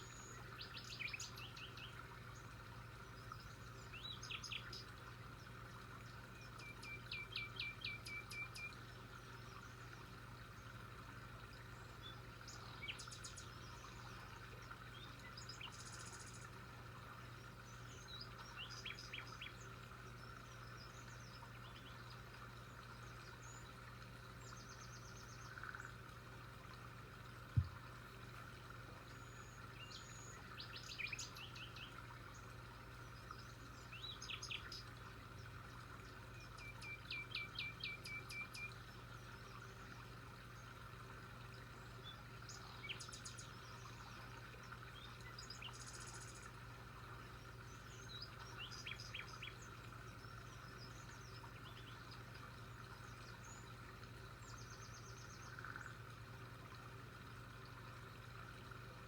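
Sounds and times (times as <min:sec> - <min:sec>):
songbirds chirping: 0:00.0 - 0:59.0.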